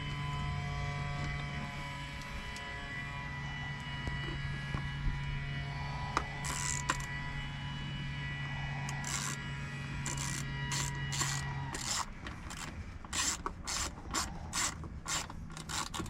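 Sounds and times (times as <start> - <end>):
steady low hum: 0.0 - 16.0
seatbelt retractor rasping: 6.0 - 7.3, 8.7 - 16.0.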